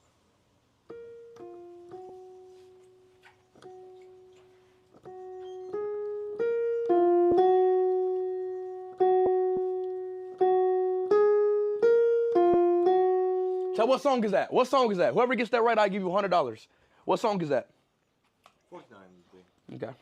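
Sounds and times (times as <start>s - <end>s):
slow piano melody: 0.9s - 14.4s.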